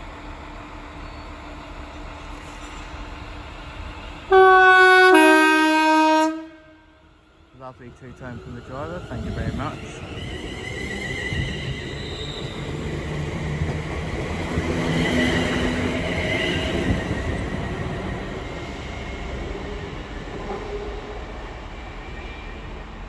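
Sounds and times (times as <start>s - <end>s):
train wheels rumbling: 7.1s - 23.0s.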